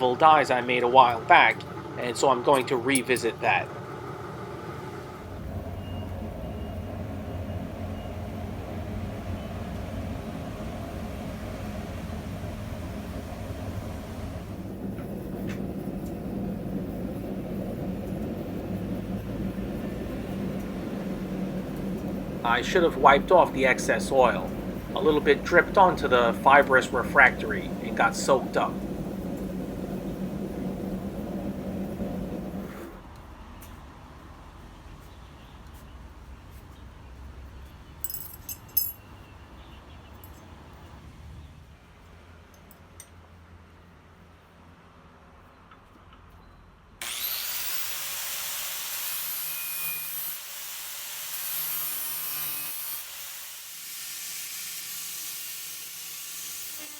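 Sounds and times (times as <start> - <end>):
forge rumbling and humming: 0.0 - 33.0
forge hiss: 19.8 - 33.0
steel pieces clinking: 38.0 - 39.1.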